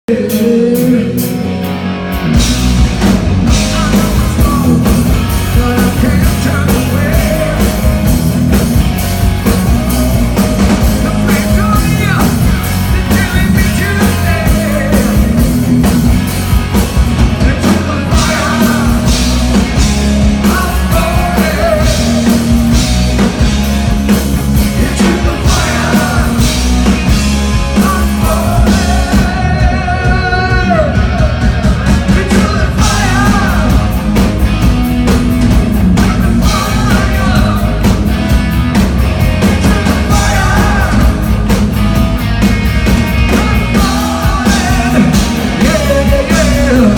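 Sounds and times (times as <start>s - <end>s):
person singing: 0.0s - 1.5s, 3.5s - 8.2s, 10.8s - 15.5s, 17.4s - 19.6s, 20.4s - 22.6s, 24.7s - 27.0s, 27.6s - 34.1s, 36.0s - 38.0s, 39.4s - 41.3s, 43.2s - 46.9s
hard rock band playing: 0.1s - 46.9s.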